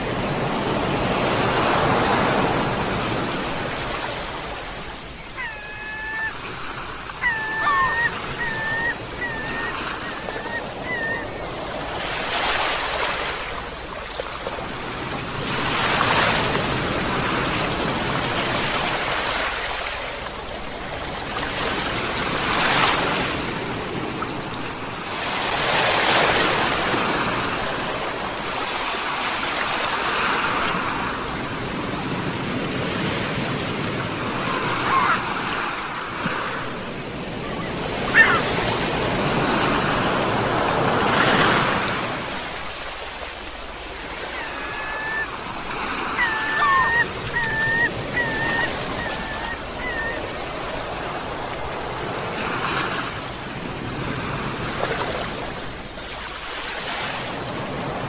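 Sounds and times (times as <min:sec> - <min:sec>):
sea waves breaking on shore: 0:00.0 - 0:58.0
seagulls calling: 0:04.8 - 0:12.8, 0:34.3 - 0:35.6, 0:37.3 - 0:39.7, 0:43.9 - 0:51.5.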